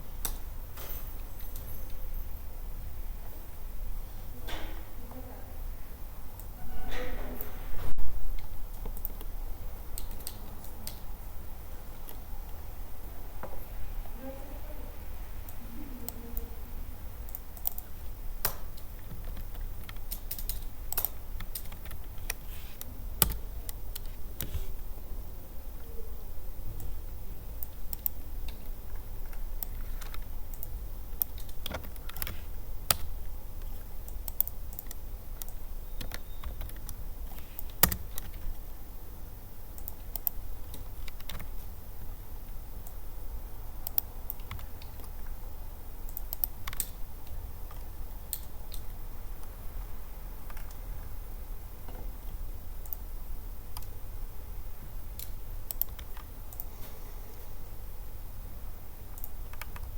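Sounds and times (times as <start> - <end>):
keyboard typing clicks: 8.4 - 9.3, 9.9 - 11.1, 17.2 - 24.6, 27.6 - 38.6, 39.7 - 41.7, 43.8 - 45.4, 46.1 - 49.5, 50.4 - 50.8, 51.9 - 53.1, 55.2 - 56.7, 59.1 - 59.9.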